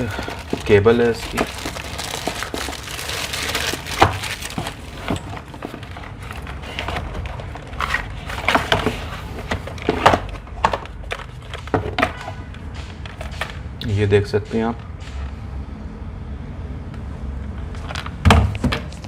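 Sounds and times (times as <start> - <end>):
cardboard and plastic packaging rustling: 0.0 - 13.7.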